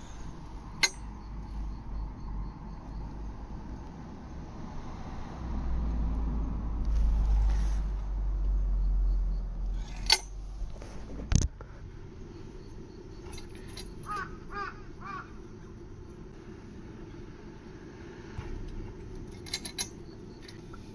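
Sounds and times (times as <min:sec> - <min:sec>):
crow cawing: 0:14.0 - 0:15.4.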